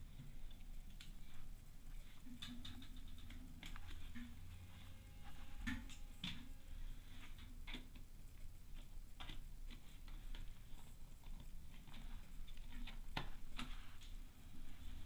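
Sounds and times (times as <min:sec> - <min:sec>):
plastic parts clicking and tapping: 0:02.2 - 0:04.4.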